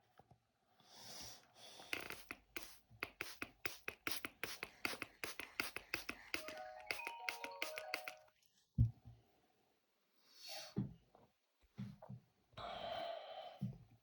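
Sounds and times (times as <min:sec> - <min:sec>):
music: 0:06.4 - 0:08.3.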